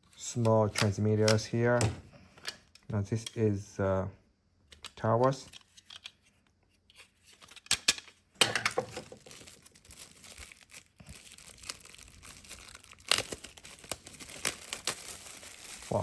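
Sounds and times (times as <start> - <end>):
packaging rustling and crinkling: 8.5 - 16.0.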